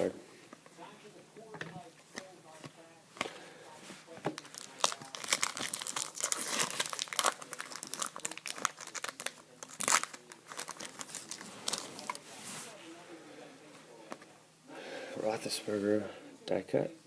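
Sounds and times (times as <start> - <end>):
card pack wrappers crinkling: 4.3 - 12.2.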